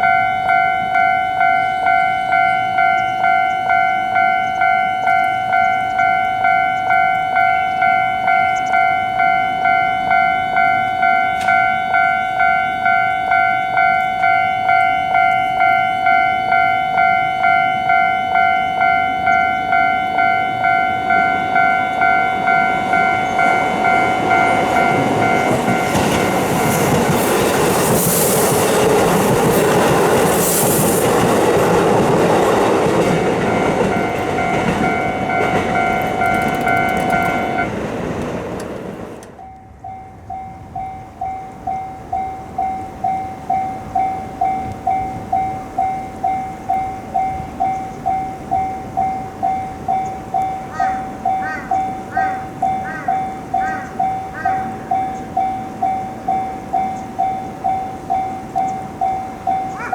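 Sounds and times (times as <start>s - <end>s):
level crossing bell ringing: 0.0s - 27.8s, 31.1s - 37.8s, 39.4s - 59.9s
train wheels clattering on rails: 10.8s - 12.2s, 20.2s - 39.7s.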